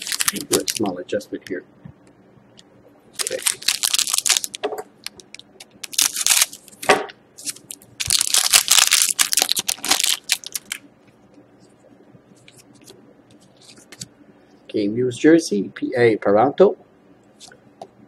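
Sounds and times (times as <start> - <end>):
foil wrapper crackling: 0.0 - 1.0, 3.2 - 10.8.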